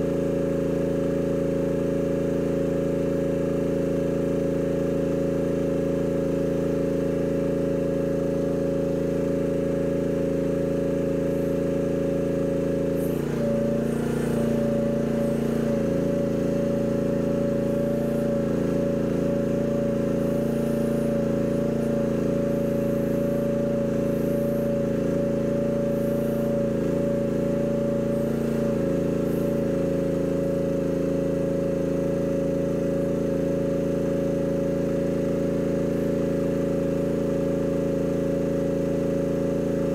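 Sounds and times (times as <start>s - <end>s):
excavator engine whining: 0.0s - 38.9s.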